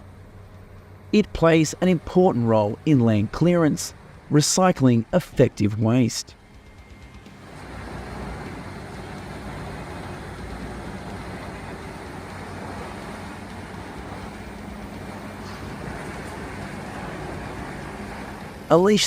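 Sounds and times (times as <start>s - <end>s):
grinder engine droning: 6.3s - 18.9s.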